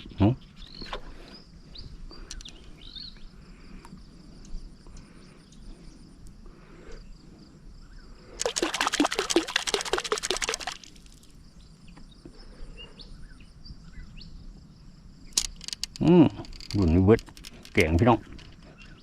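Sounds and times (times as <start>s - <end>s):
insects chirring: 0.0s - 19.0s
fish thrashing in water: 8.4s - 11.3s.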